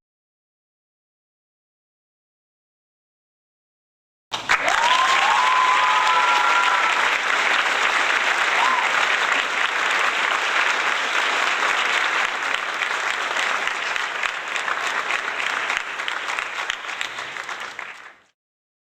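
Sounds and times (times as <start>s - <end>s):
crowd applause: 4.3s - 18.4s.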